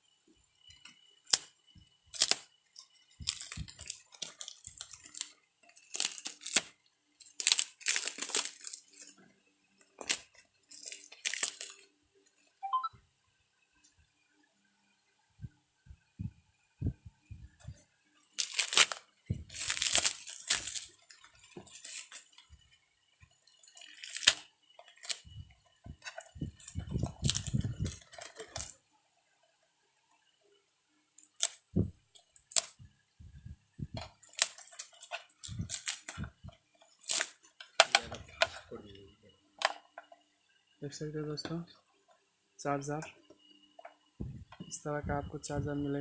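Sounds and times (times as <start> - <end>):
packaging rustling and tearing: 2.1 - 9.2, 10.0 - 11.9, 17.7 - 22.5, 23.7 - 25.4, 26.0 - 28.8, 31.2 - 32.8, 33.9 - 38.6.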